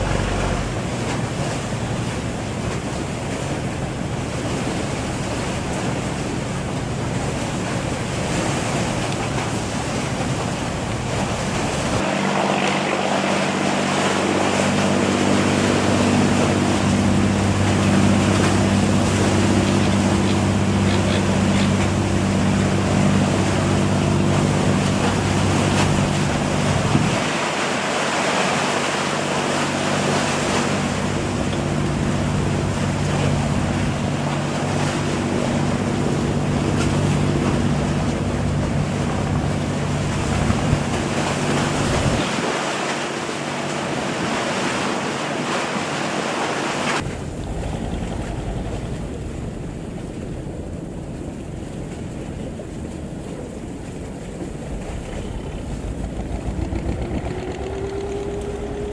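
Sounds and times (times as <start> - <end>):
boat engine humming: 0.0 - 58.9
waves: 0.0 - 58.9
wind: 0.0 - 58.9.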